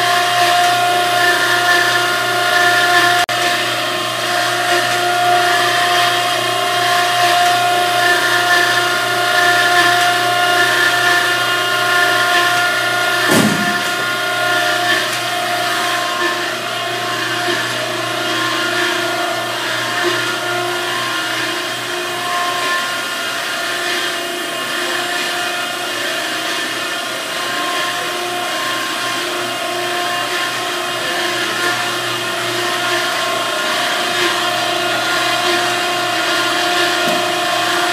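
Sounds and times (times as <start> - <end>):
surface grinder humming: 0.0 - 37.9
sharp knock: 13.3 - 14.0.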